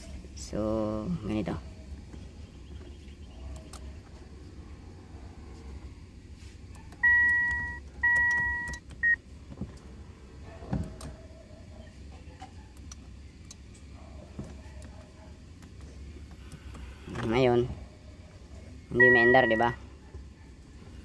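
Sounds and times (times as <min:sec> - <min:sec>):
car warning buzzer beeping: 0:07.0 - 0:09.2, 0:18.9 - 0:19.8.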